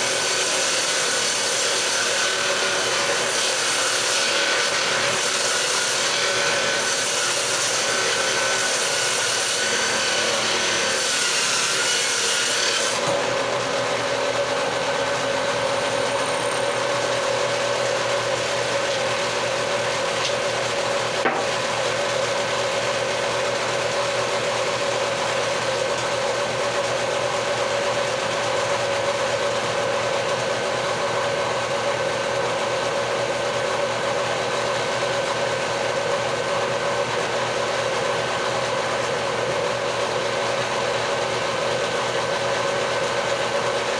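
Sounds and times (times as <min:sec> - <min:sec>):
power tool motor whine: 0:12.5 - 0:43.9
tool cutting into wood: 0:21.2 - 0:21.8.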